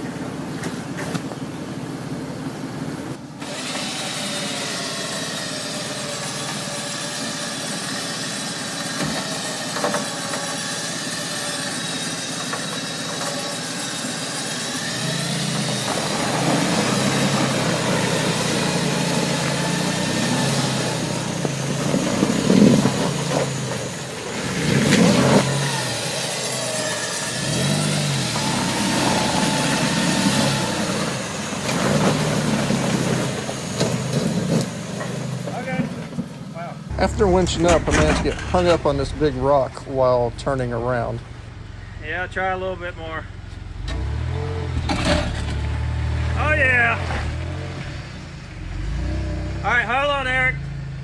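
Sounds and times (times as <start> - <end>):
truck engine revving: 13.2 - 35.8, 36.9 - 51.0
steady whine: 36.9 - 43.8.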